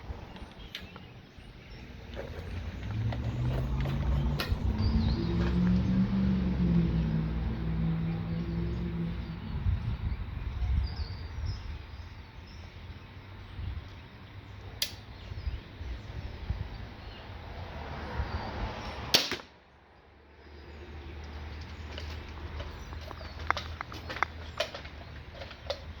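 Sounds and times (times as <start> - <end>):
light click: 14.8 - 15.0.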